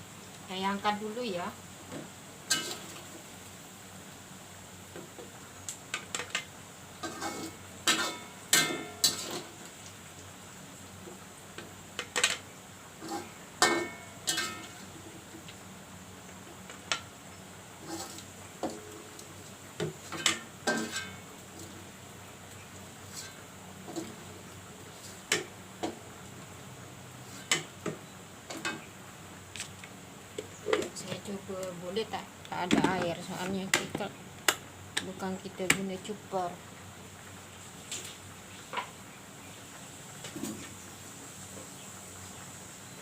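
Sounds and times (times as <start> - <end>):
metal utensils clinking on cookware: 2.5 - 3.0, 6.1 - 9.5, 13.0 - 14.8, 20.1 - 21.3.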